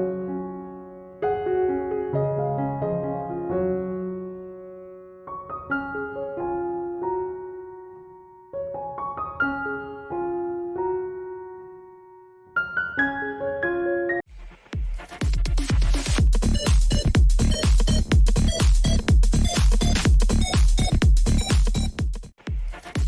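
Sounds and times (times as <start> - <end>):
piano music: 0.0 - 14.3.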